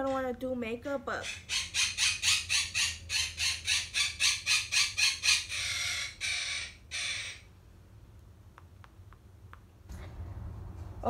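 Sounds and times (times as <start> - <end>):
parrot squawking: 1.1 - 7.6
parrot screeches: 1.2 - 7.5.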